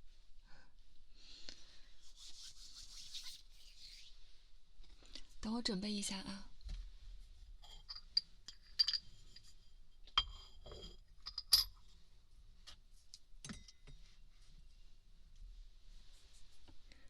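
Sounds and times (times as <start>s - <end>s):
glass and metal objects clinking: 7.6s - 11.8s.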